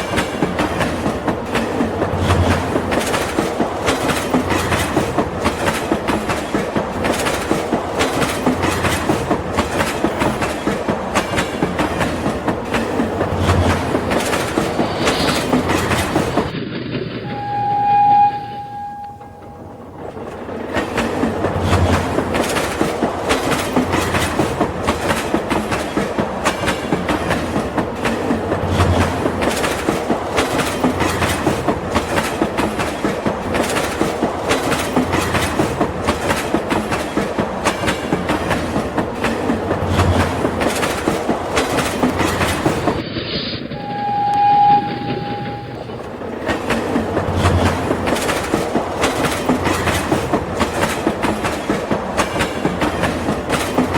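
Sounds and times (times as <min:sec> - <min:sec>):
train wheels clattering on rails: 0:00.0 - 0:53.9
train whistle tone: 0:17.2 - 0:19.9, 0:43.7 - 0:46.0.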